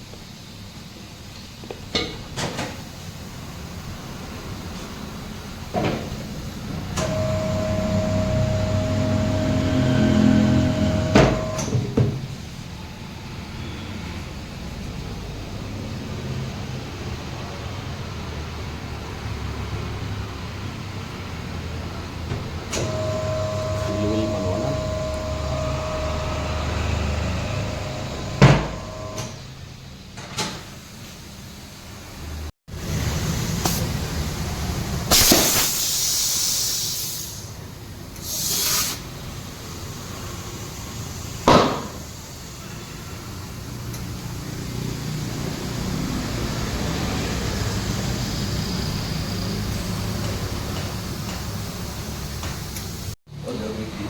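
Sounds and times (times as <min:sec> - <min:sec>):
electric motor humming: 0:07.0 - 0:11.6, 0:22.8 - 0:29.2
loud clunk: 0:11.1 - 0:12.2, 0:28.4 - 0:29.4, 0:41.4 - 0:42.0.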